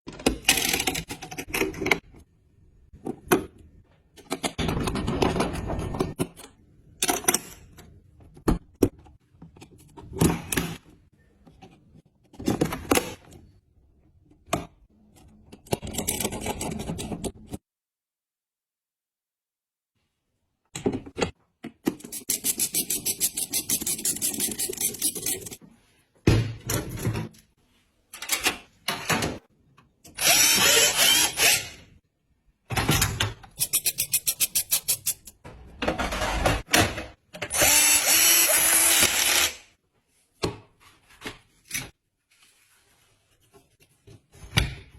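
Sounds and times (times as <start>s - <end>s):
small power drill running: 30.2s - 31.8s, 37.5s - 39.7s.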